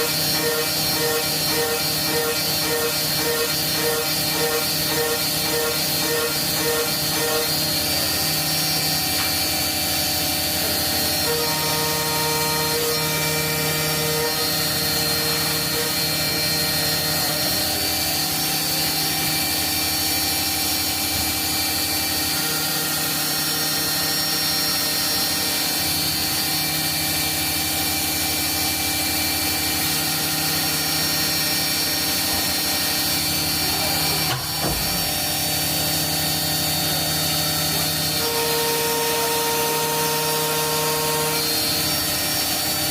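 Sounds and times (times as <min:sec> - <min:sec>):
milling machine hum and whine: 0:00.0 - 0:42.9.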